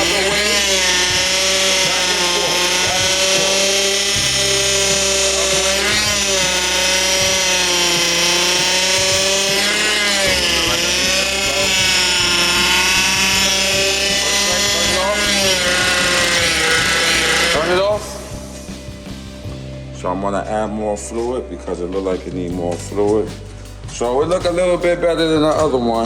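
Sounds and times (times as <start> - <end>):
power steering pump whining: 0.0 - 19.7
car engine running: 0.0 - 19.9.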